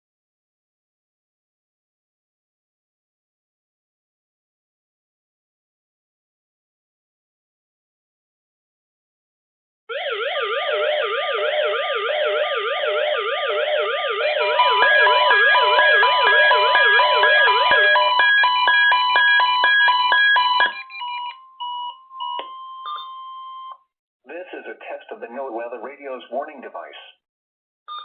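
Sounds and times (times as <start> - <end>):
warbling alarm tones: 9.9 - 23.7
rapid beeping: 14.3 - 21.3.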